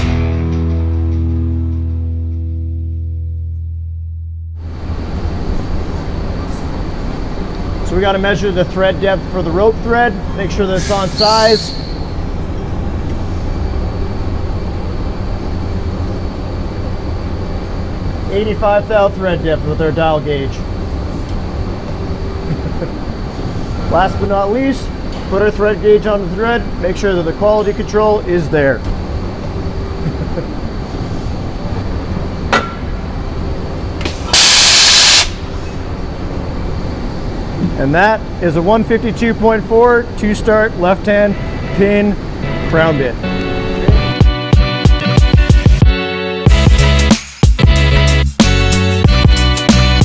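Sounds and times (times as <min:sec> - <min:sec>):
machinery low rumble: 0:00.0 - 0:34.2, 0:35.3 - 0:44.4
high-pitched machine whine: 0:04.6 - 0:44.3
compressed air blow gun hiss: 0:10.7 - 0:12.0, 0:34.0 - 0:35.8
brief puff of air: 0:10.8 - 0:12.0, 0:34.0 - 0:35.8.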